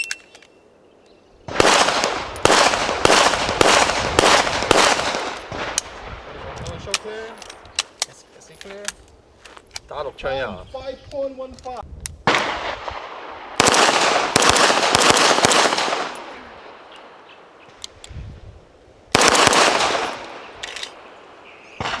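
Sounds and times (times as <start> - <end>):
pistol shots: 1.5 - 5.8, 12.3 - 16.4, 19.1 - 21.0.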